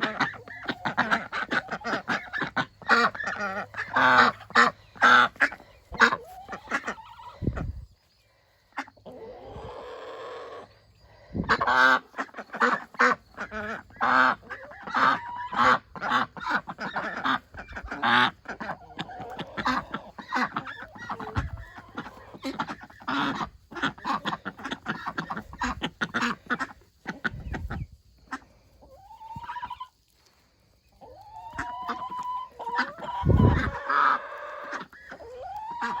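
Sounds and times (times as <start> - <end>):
chicken drawn-out calls: 0.0 - 36.0
chickens clucking: 0.0 - 36.0.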